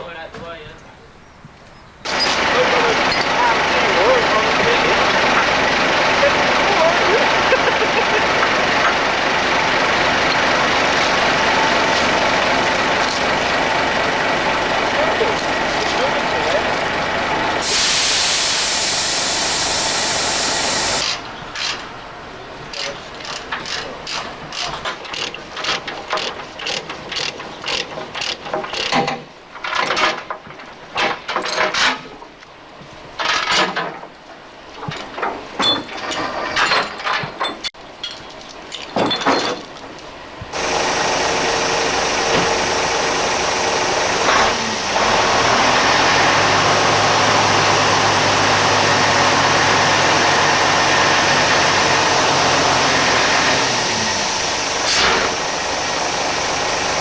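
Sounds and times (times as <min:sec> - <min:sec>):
engine running: 0:02.0 - 0:28.8, 0:38.1 - 0:57.0.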